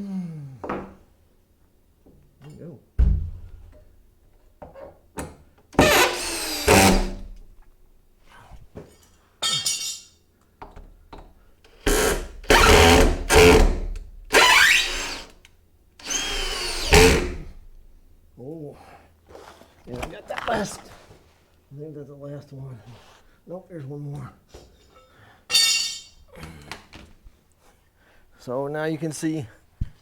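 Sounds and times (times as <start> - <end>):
power drill driving screws: 5.8 - 7.4, 11.8 - 15.4, 16.0 - 17.8.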